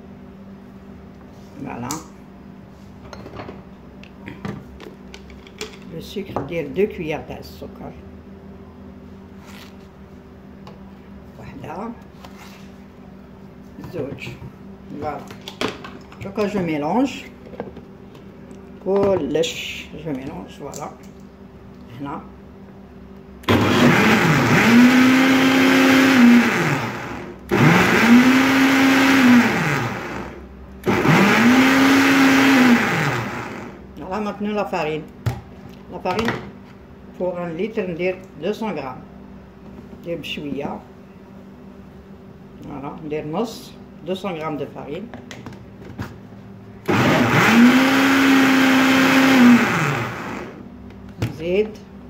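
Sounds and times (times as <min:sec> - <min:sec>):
electric blender whining: 0:23.4 - 0:33.8, 0:46.8 - 0:50.6.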